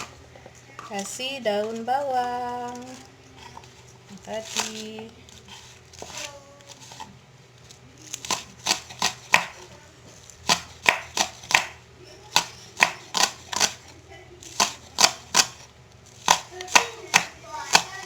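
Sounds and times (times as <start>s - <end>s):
knife chopping on cutting board: 8.2s - 9.6s, 10.4s - 13.8s, 14.5s - 18.0s.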